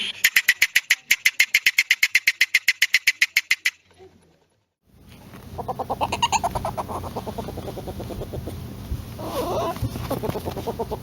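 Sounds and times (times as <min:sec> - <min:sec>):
polecat clucking chatter: 0:05.6 - 0:08.6, 0:09.2 - 0:11.0.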